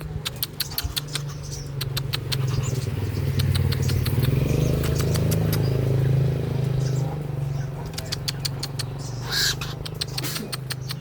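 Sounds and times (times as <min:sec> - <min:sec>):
sharp clicks: 0:00.0 - 0:02.6, 0:03.3 - 0:05.7, 0:07.8 - 0:09.0, 0:09.6 - 0:11.0
motor engine running: 0:00.0 - 0:11.0.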